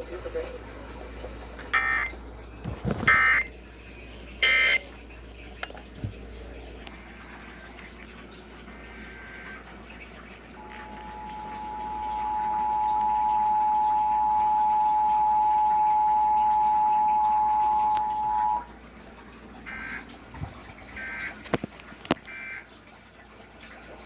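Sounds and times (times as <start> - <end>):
two-tone alert signal: 1.8 - 2.1, 3.1 - 3.5, 4.4 - 4.8, 10.6 - 18.7.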